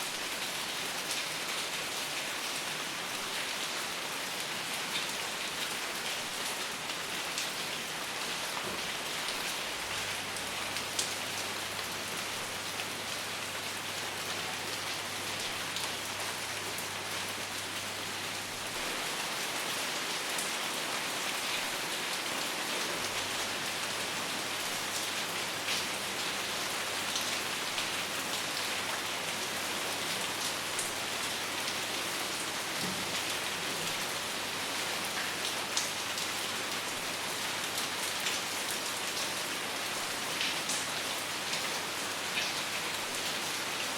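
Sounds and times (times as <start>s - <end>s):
steady rain falling: 0.0s - 43.9s.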